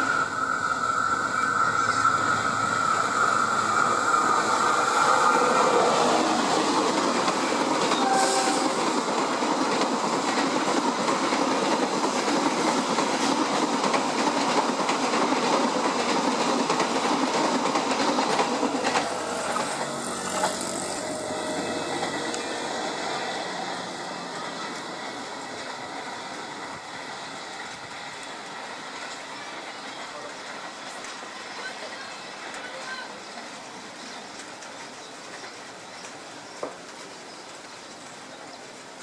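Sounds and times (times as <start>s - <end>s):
high steady tone: 0.0s - 7.1s, 18.3s - 25.2s
train wheels clattering on rails: 0.0s - 39.0s.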